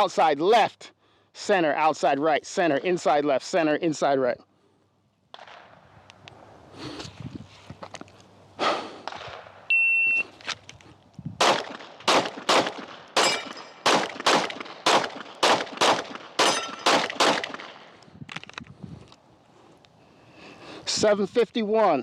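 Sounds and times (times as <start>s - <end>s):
pistol shots: 5.3s - 5.8s, 11.4s - 18.0s
shot timer beep: 9.7s - 10.2s
bullets hitting steel plate: 11.5s - 17.8s.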